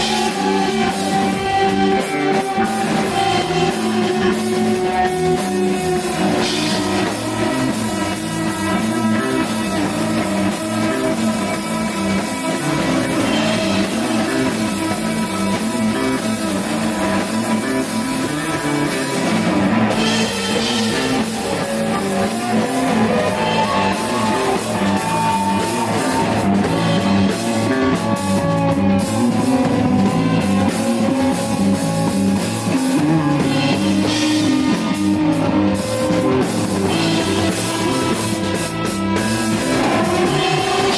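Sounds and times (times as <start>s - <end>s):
bass guitar: 0.0s - 40.9s
drum kit: 0.0s - 40.9s
electric guitar: 0.0s - 40.9s.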